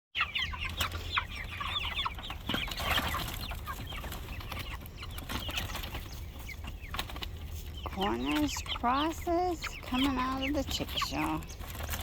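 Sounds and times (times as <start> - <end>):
chicks peeping and clucking: 0.1 - 12.0.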